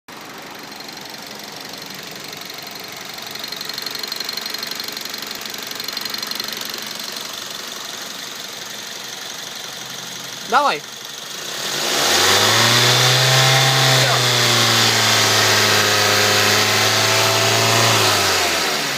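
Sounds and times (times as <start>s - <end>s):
rapid engine ticking: 0.1s - 11.8s
car engine idling: 0.1s - 17.6s.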